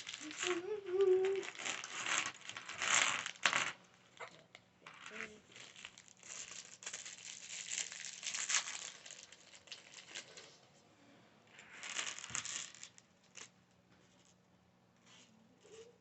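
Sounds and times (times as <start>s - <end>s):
plastic bag crinkling: 0.0s - 10.6s, 11.6s - 13.6s.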